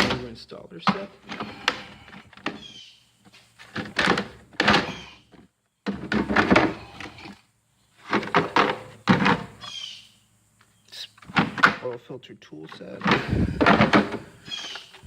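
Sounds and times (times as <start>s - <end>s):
metal drawers sliding and knocking shut: 13.0s - 14.3s.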